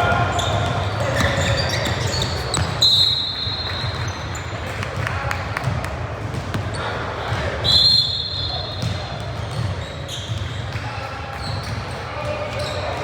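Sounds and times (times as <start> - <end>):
referee whistle blasts: 2.7 - 4.1, 7.6 - 8.8.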